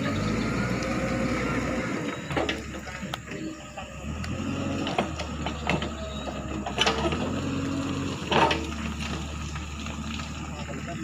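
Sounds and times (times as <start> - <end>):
backhoe diesel engine running: 0.0 - 11.0
machine clunks and knocks: 8.2 - 9.2.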